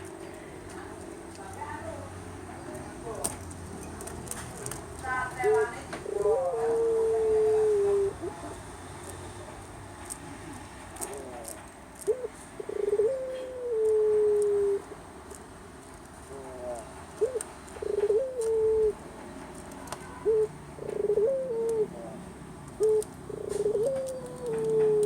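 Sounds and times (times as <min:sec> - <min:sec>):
dove cooing: 0:04.6 - 0:08.6, 0:11.0 - 0:14.9, 0:16.2 - 0:19.1, 0:20.0 - 0:25.0.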